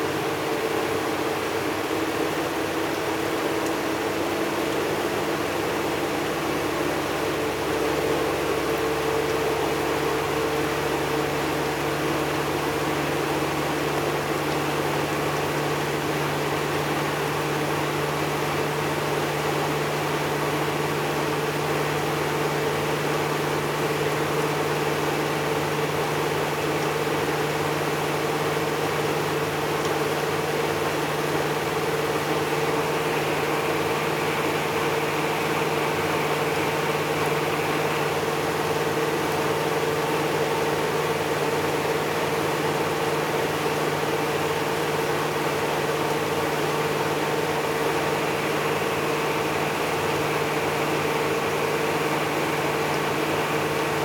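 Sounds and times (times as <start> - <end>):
washing machine motor hum: 0.0 - 54.0.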